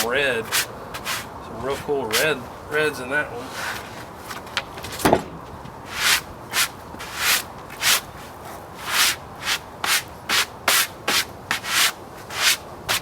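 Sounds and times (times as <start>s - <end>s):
brush sweeping sawdust off wood: 0.0s - 2.5s, 3.3s - 4.4s, 5.8s - 13.0s.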